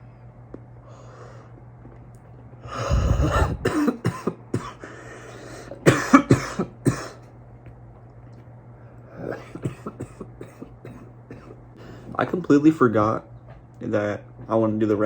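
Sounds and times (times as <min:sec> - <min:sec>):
person coughing: 0:02.7 - 0:05.0, 0:05.6 - 0:07.3, 0:09.2 - 0:11.6.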